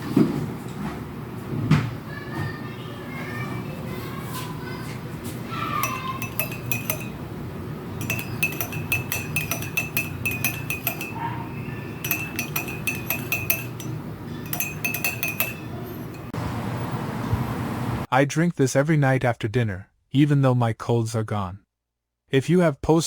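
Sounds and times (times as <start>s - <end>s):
metal spoon clinking in cup: 5.8s - 16.4s.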